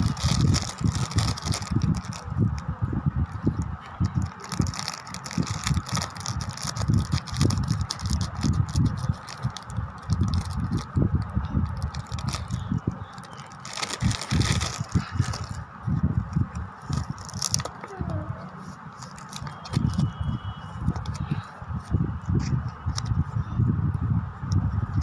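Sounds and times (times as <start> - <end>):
plastic packaging rattling and crackling: 0.0 - 2.6, 3.2 - 15.6, 16.3 - 18.0, 18.9 - 20.2, 20.9 - 21.3.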